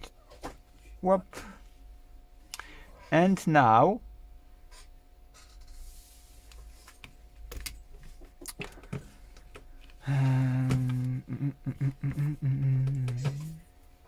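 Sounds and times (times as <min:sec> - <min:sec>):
loud low hum: 0:10.0 - 0:13.7.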